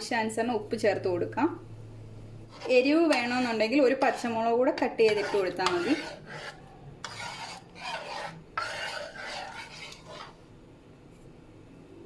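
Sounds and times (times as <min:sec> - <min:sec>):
spoon scraping a pan: 0:02.4 - 0:10.5.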